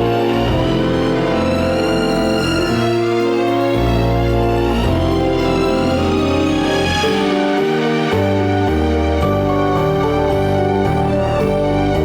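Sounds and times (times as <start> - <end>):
orchestral chords over deep bass: 0.0 - 12.0.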